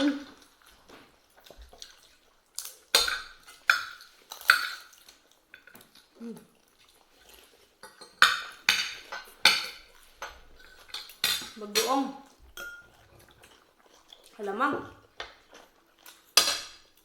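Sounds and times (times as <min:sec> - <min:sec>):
cutlery clinking on a plate: 0:07.8 - 0:12.0, 0:12.6 - 0:13.0, 0:16.4 - 0:16.9.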